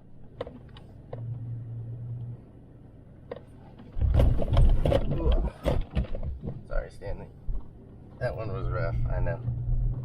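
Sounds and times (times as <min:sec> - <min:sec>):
truck engine hum: 0:00.0 - 0:04.1, 0:06.6 - 0:10.0
truck jolting with thuds and rattles: 0:04.0 - 0:06.7.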